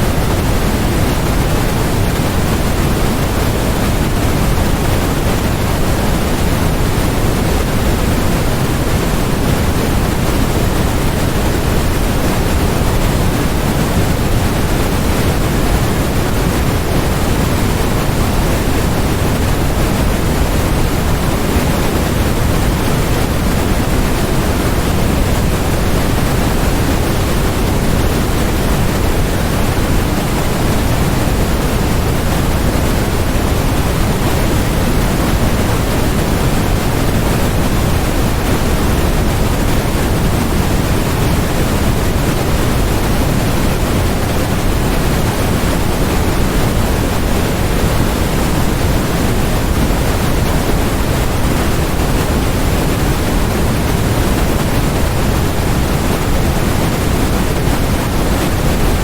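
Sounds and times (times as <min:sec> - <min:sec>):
white noise hiss: 0:00.0 - 0:59.0.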